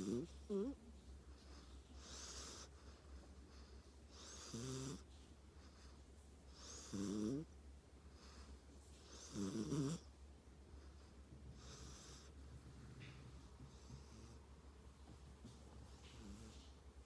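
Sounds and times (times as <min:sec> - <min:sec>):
pet snoring softly: 0:00.0 - 0:00.8, 0:01.5 - 0:07.6, 0:08.2 - 0:10.1, 0:10.8 - 0:14.6, 0:15.5 - 0:16.8
faint breath: 0:08.1 - 0:09.2.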